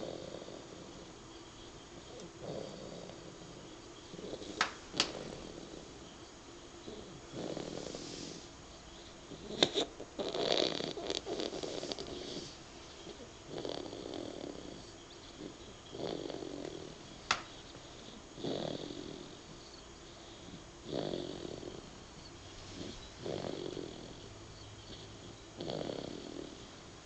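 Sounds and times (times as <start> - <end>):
man snoring: 0.0 - 1.1, 2.0 - 6.0, 6.8 - 8.4, 10.2 - 12.6, 13.5 - 17.0, 18.0 - 19.6, 20.4 - 22.0, 22.8 - 26.8.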